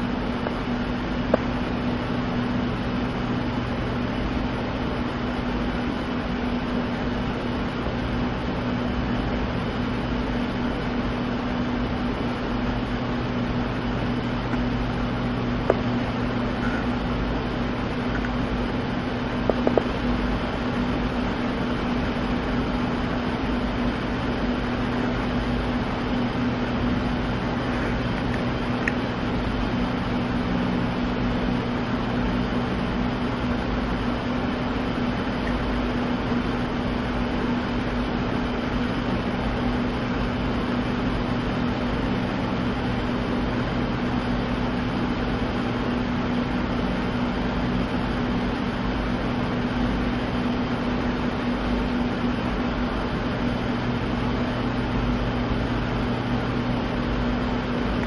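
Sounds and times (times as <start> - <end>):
constant hiss: 0.0 - 58.0
machine hum: 0.0 - 58.0.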